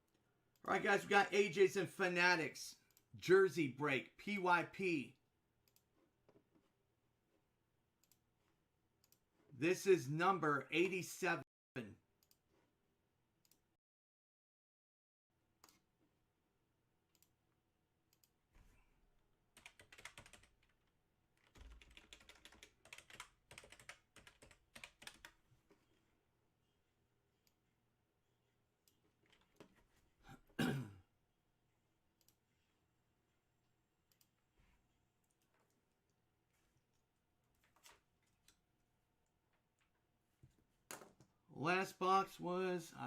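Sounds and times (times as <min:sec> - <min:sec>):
keyboard typing: 0:19.6 - 0:25.4.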